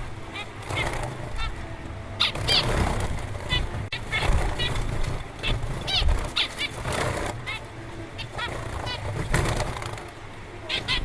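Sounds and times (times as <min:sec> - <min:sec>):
low background rumble: 0:00.0 - 0:11.0.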